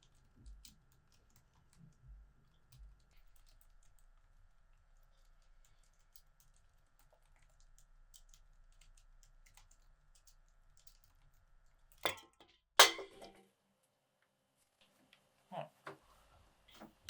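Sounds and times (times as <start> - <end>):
faint keyboard typing: 0.0 - 11.8.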